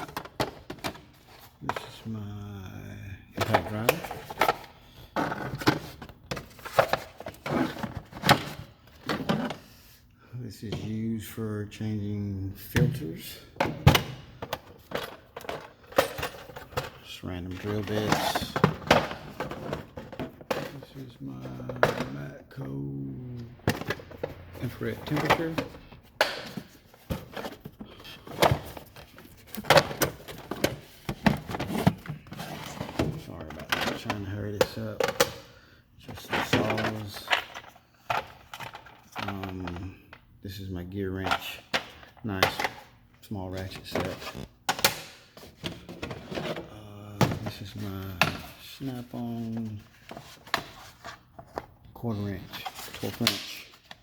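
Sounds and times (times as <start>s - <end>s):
tools clattering in drawer: 0.0s - 2.0s, 3.4s - 9.6s, 13.6s - 22.3s, 23.6s - 35.4s, 36.1s - 39.9s, 43.6s - 48.5s
hand tools clattering in metal drawer: 13.6s - 22.2s.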